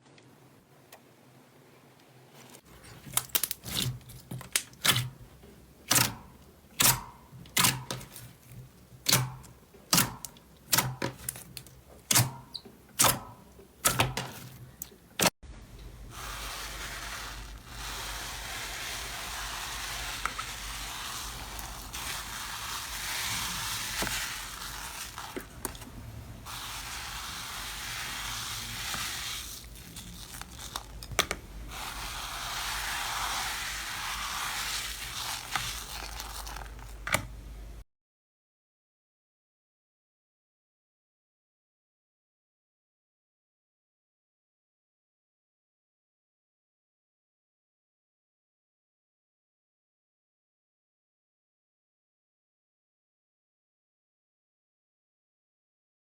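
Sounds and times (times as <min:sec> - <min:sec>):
slime crackling and squishing: 0:02.6 - 0:12.3, 0:16.0 - 0:37.3
slime popping: 0:16.2 - 0:37.1.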